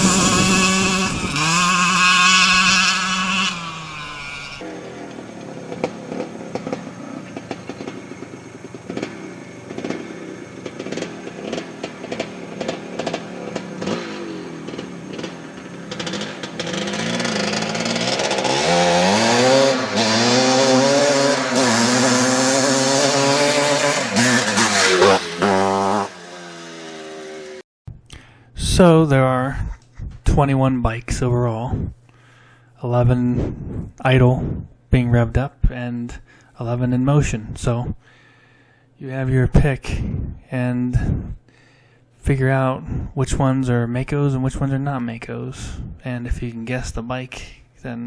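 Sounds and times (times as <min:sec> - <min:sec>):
dirt bike engine revving: 0:00.0 - 0:27.6.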